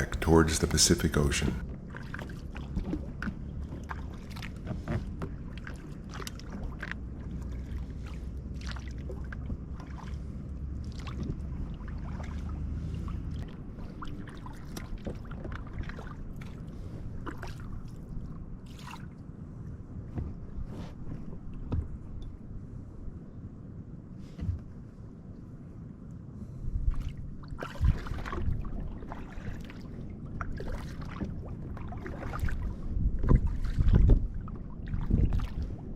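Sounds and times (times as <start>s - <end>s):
paddle splashes: 0.0s - 19.2s, 26.9s - 35.9s.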